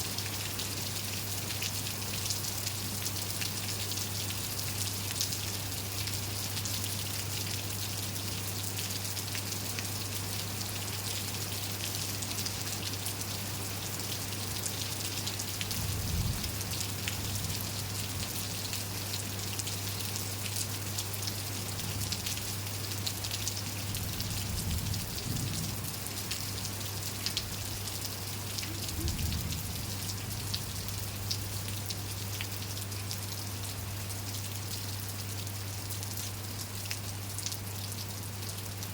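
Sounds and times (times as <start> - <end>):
rain falling: 0.0 - 38.9.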